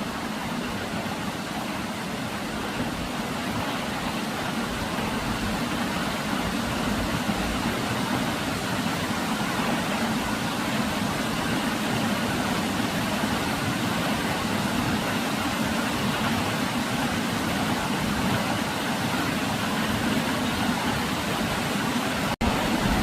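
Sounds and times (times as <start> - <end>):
waterfall rushing: 0.0 - 23.0.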